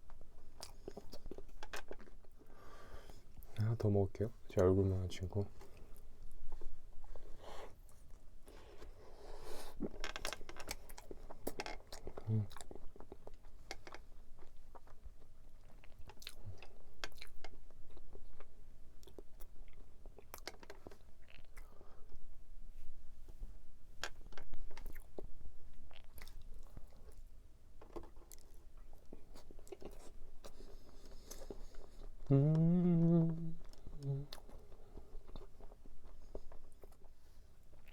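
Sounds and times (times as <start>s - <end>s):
chewing and biting pastry: 0.0s - 3.7s, 5.6s - 22.2s, 24.0s - 37.9s
wet chewing: 24.3s - 37.9s
low throat hum: 32.2s - 34.4s.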